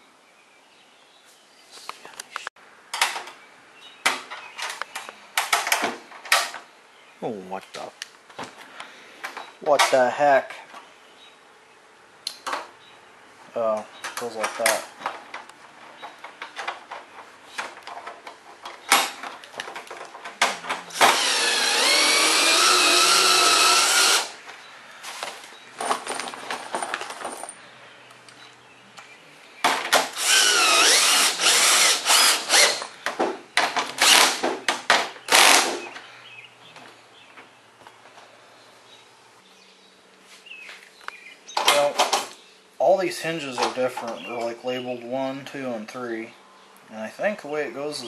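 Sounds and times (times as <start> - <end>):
handling clicks and knocks: 14.0 - 20.9, 25.8 - 30.0
power driver running screws: 20.9 - 24.4, 30.0 - 32.9, 34.0 - 34.4, 35.3 - 35.8.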